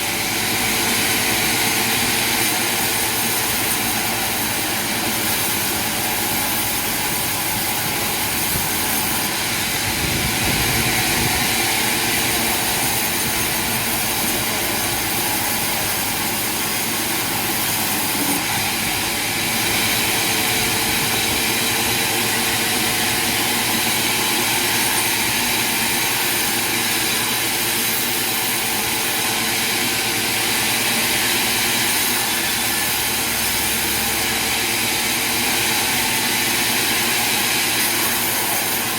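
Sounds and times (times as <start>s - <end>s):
constant high whine: 0.0s - 38.9s
sawmill machinery roaring: 0.0s - 38.9s.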